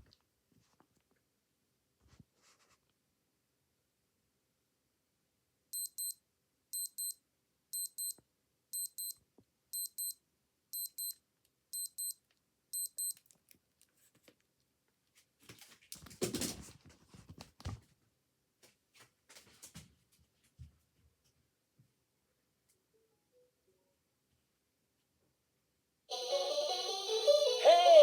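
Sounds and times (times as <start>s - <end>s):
digital watch alarm beeping: 5.8s - 6.2s, 6.8s - 7.2s, 7.8s - 8.2s, 8.8s - 9.2s, 9.8s - 10.2s, 10.8s - 11.2s, 11.8s - 12.2s, 12.8s - 13.2s.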